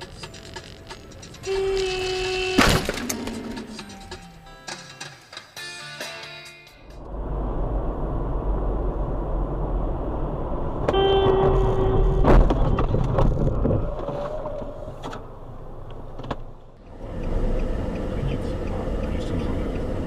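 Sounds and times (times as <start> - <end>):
car horn: 1.4 - 2.9, 10.8 - 13.0
car road and engine rumble: 6.8 - 20.0.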